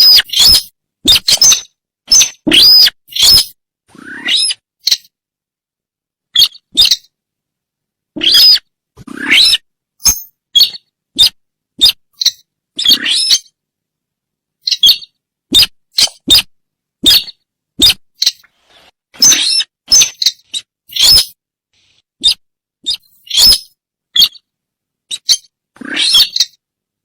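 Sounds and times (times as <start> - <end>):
high-pitched bird calls: 0.0 - 5.1, 6.4 - 7.1, 8.2 - 13.6, 14.6 - 18.4, 19.2 - 21.4, 22.2 - 24.5, 25.1 - 26.6.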